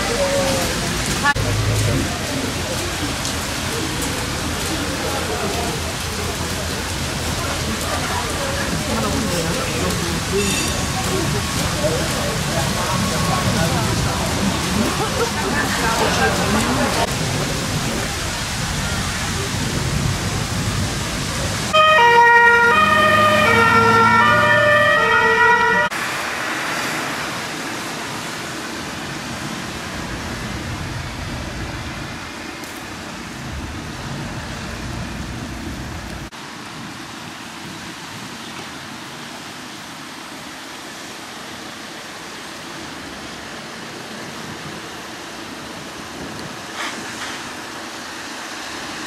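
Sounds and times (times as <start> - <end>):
heavy rain: 0.0 - 49.0
wind: 0.0 - 49.0
two-tone siren: 21.7 - 25.9.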